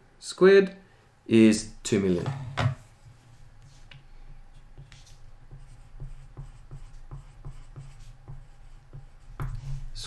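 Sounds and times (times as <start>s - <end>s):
pen strokes and taps: 4.7s - 9.9s.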